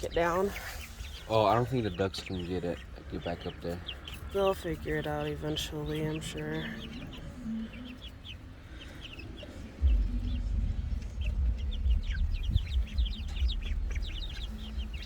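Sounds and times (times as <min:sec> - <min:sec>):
chickens clucking: 0:00.0 - 0:15.0
loud low rumble: 0:09.6 - 0:15.0.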